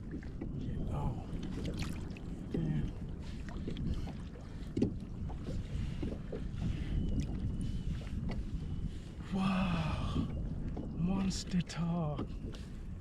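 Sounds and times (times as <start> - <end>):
low rumble of wind: 0.0 - 13.0
water around boat: 0.0 - 13.0
light knocks on boat: 4.8 - 5.0.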